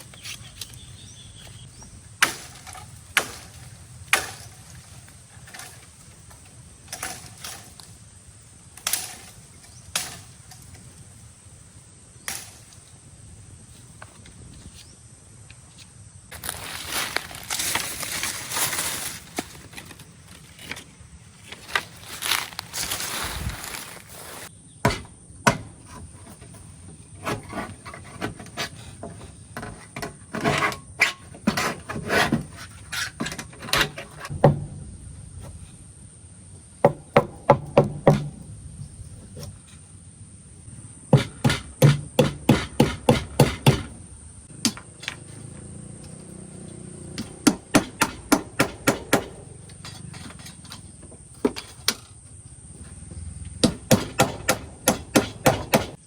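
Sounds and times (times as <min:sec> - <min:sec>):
sharp hammering knocks: 0:02.2 - 0:05.8, 0:24.8 - 0:26.0, 0:33.7 - 0:35.7, 0:36.8 - 0:38.5, 0:41.1 - 0:45.0, 0:47.1 - 0:50.0, 0:53.6 - 0:56.0.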